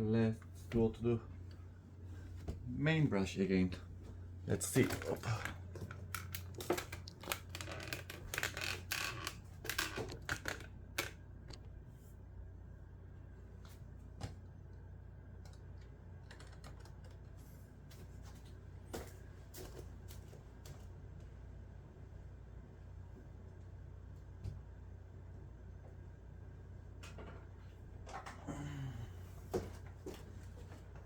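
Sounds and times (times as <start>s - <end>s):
low steady hum: 0.0s - 31.0s
plastic parts clicking and rattling: 4.7s - 11.6s.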